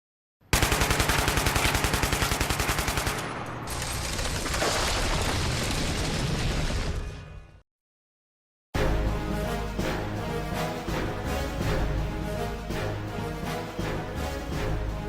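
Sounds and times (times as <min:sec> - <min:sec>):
automatic gunfire burst: 0:00.5 - 0:04.8.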